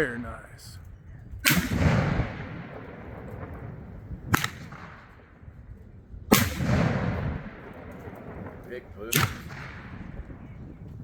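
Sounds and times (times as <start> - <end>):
fireworks bangs: 1.4 - 5.3, 6.3 - 10.5.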